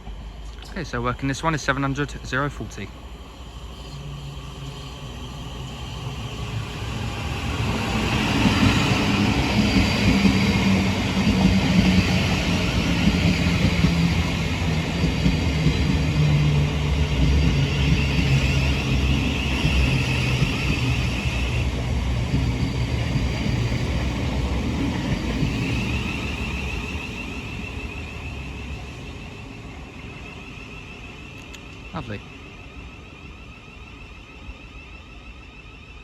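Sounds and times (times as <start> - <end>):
train motor hum: 0.0 - 29.2
wavering high whine: 25.6 - 36.0.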